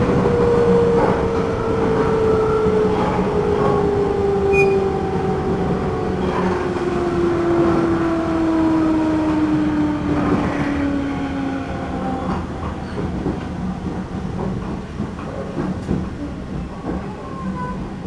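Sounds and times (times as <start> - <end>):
train motor and gear whine: 0.0 - 13.4
wheels rumbling on rails: 0.0 - 18.0.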